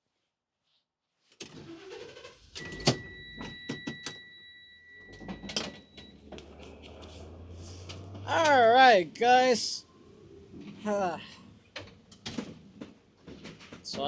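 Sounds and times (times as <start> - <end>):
low engine hum: 4.8 - 11.7.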